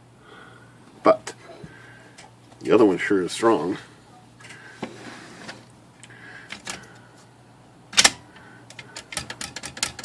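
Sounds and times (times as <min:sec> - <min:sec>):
typewriter clicks and clacks: 0:08.0 - 0:10.0.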